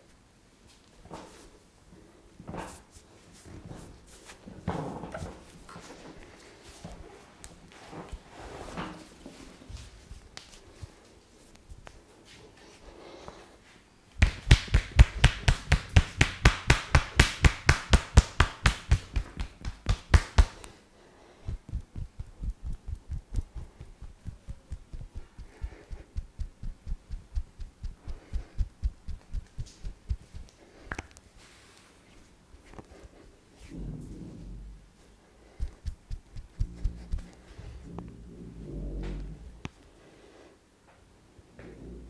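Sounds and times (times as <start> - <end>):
soft dull massage strokes: 0.0 - 40.6
hands slapping body: 14.2 - 20.8.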